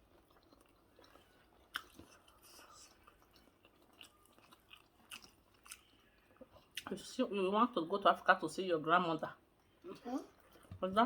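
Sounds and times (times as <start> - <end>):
chewing and mouth clicks: 0.0 - 6.9.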